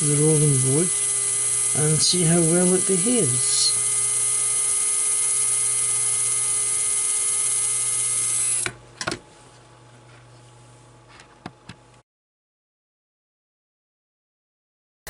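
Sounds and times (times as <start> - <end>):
small electric motor humming: 0.0 - 8.8.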